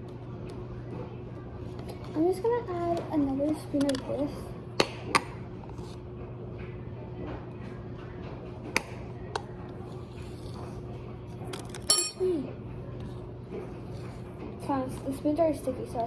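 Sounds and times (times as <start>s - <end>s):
steady low hum: 0.0s - 16.0s
spoon clinking against bowl: 11.8s - 12.2s.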